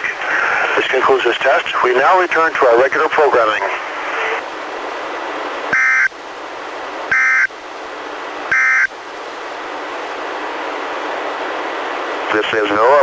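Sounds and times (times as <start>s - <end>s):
radio hiss: 0.0s - 4.5s, 12.2s - 13.0s.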